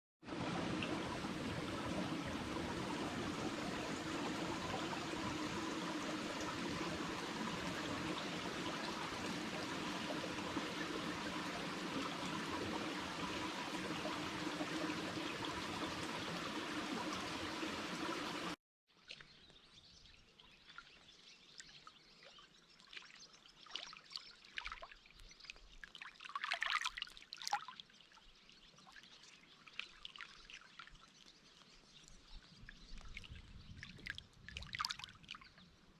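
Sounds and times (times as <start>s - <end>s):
flowing water rushing: 0.2s - 18.6s
quiet outdoor ambience: 0.3s - 18.5s.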